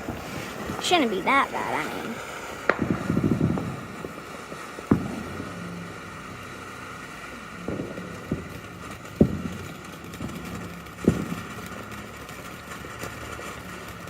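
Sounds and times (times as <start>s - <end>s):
fireworks bangs: 0.0s - 14.0s
fireworks crackle: 0.0s - 14.0s.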